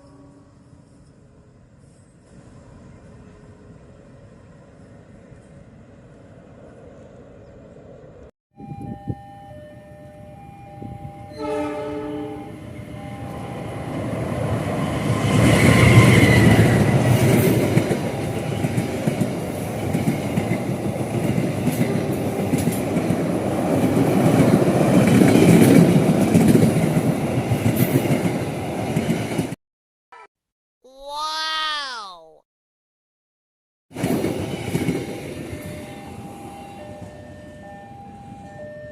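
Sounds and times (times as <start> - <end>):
train horn: 0.0 - 0.6, 11.2 - 13.5
train rumble passing: 12.2 - 29.6.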